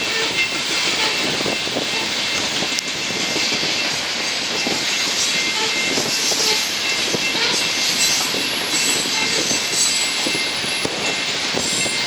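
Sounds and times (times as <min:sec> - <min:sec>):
train wheels roaring on rail: 0:00.0 - 0:12.0
wind buffeting microphone: 0:00.0 - 0:12.0.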